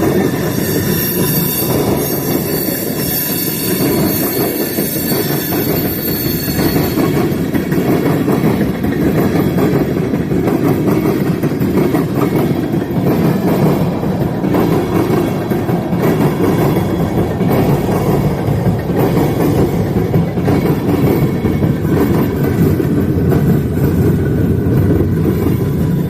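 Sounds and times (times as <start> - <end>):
high-pitched wheel squeal: 0.0 - 7.5
train wheels rumbling on rail: 0.0 - 26.0.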